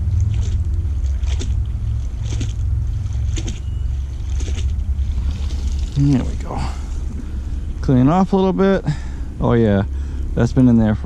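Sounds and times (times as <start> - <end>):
chain swishing strokes: 0.0 - 7.0
low rumble: 0.0 - 11.0.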